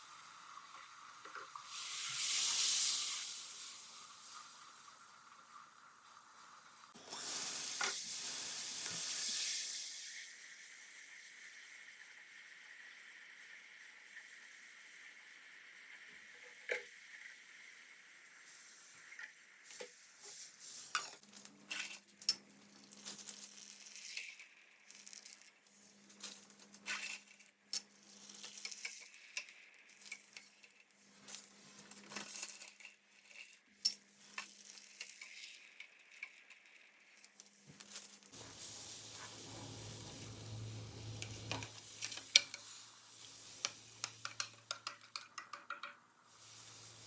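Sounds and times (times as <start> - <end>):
food sizzling in oil: 0.0 - 21.2, 38.4 - 47.0.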